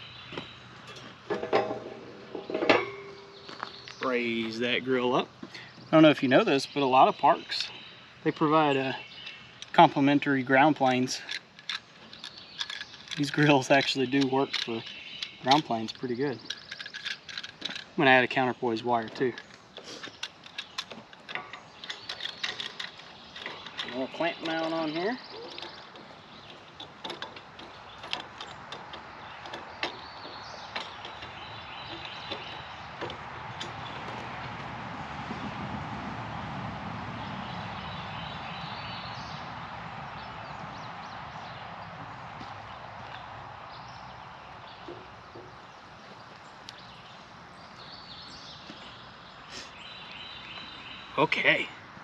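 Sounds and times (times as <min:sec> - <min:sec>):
faint high bird calls: 0:21.7 - 0:28.4.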